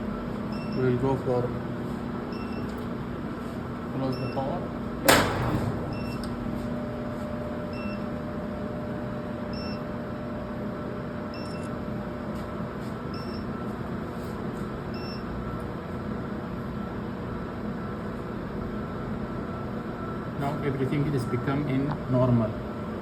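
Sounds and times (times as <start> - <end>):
machine hum and fan noise: 0.0 - 23.0
alarm buzzer beeps: 5.2 - 6.3, 13.1 - 13.5.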